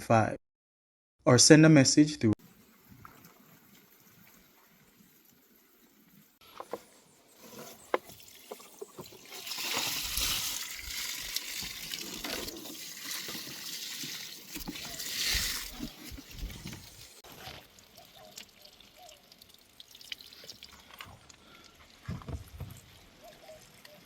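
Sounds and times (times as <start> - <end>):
water running: 7.3 - 22.0.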